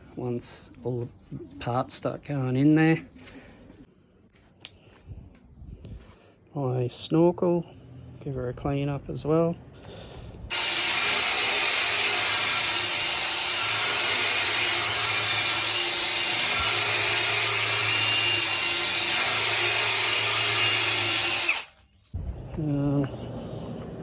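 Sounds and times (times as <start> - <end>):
electric power tool running: 10.5 - 21.8.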